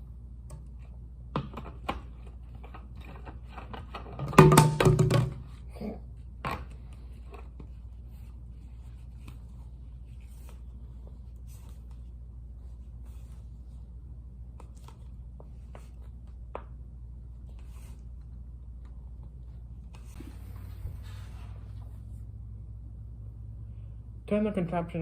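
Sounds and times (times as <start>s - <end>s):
low steady hum: 0.0s - 25.0s
plastic bottles clicking and tapping: 3.7s - 5.4s.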